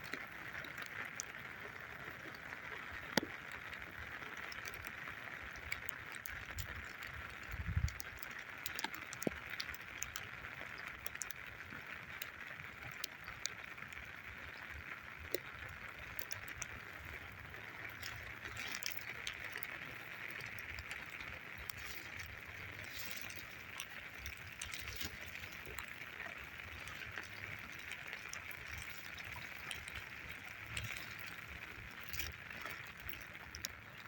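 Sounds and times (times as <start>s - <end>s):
small clicks and ticks: 0.0s - 34.0s.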